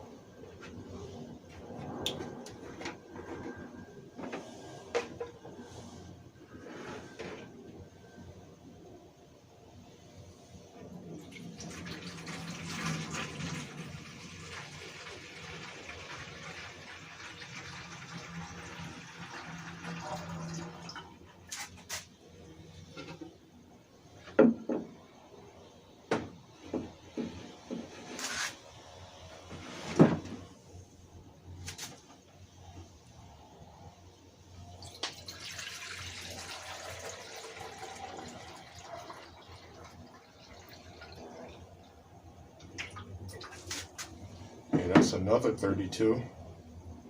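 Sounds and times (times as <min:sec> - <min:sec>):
water pouring into container: 0:11.2 - 0:21.3, 0:34.8 - 0:41.8
containers knocking and clunking: 0:44.7 - 0:45.4.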